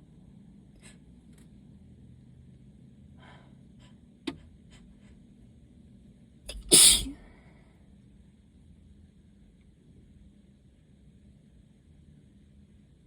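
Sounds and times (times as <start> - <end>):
quiet breaths: 3.1 - 5.2
person sneezing: 6.5 - 7.2
sharp breath catch: 6.5 - 7.4.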